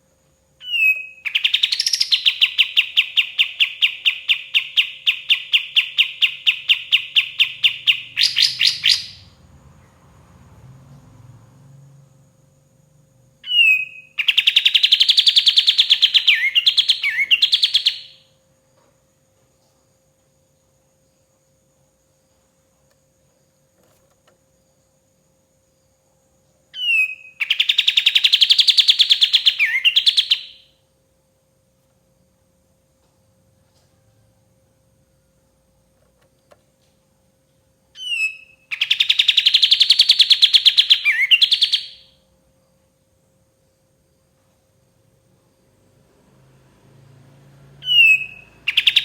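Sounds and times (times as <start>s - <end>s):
faint steady hum: 0.0s - 49.0s
songbird trilling song: 0.6s - 9.9s, 13.3s - 18.3s, 26.7s - 30.8s, 38.0s - 42.2s, 47.8s - 49.0s.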